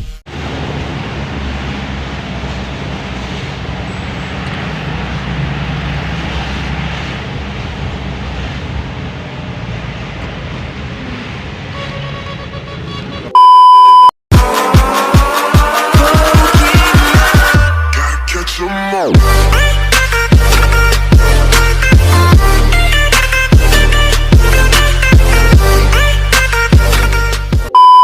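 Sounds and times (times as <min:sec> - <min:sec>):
loud electronic beep: 0:13.4 - 0:14.1, 0:27.7 - 0:28.0.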